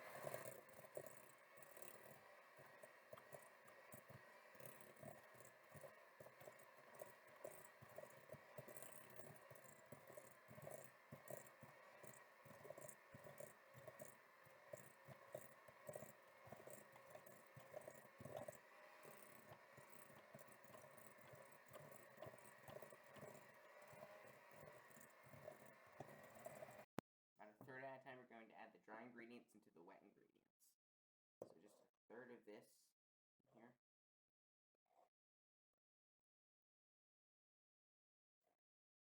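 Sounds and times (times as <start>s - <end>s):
electric mixer humming: 0.0s - 26.9s.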